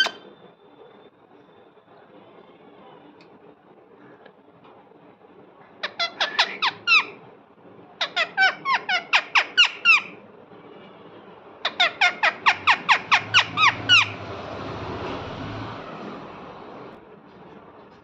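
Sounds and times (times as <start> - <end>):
parrot squawking: 0.0 - 0.2, 5.8 - 7.2, 8.0 - 10.2, 11.6 - 14.2.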